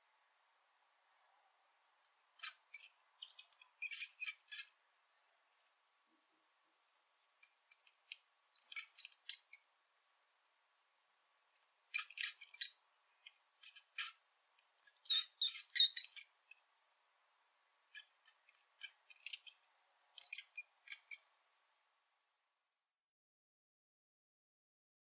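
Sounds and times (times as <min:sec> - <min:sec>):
mouse squeaking: 0:02.0 - 0:04.8, 0:07.4 - 0:07.8, 0:08.6 - 0:09.7, 0:11.6 - 0:12.8, 0:13.6 - 0:14.2, 0:14.8 - 0:16.4, 0:17.9 - 0:19.5, 0:20.2 - 0:21.3.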